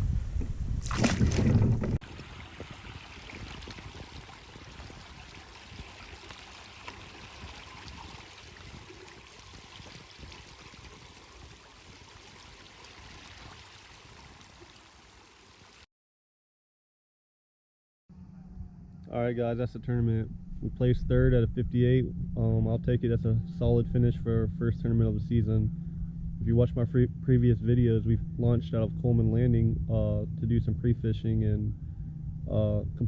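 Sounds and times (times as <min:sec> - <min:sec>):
wind rumbling on microphone: 0:00.0 - 0:14.9, 0:18.4 - 0:33.0
faint wash of water: 0:00.8 - 0:15.9.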